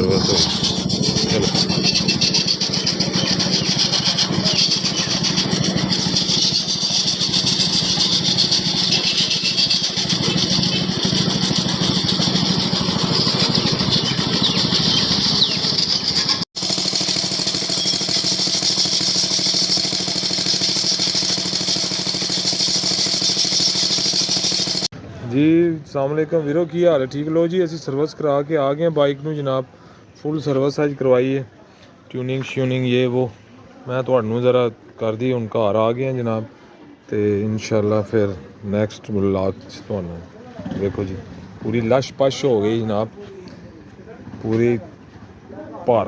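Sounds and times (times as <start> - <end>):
motorcycle engine running: 0.0 - 24.9.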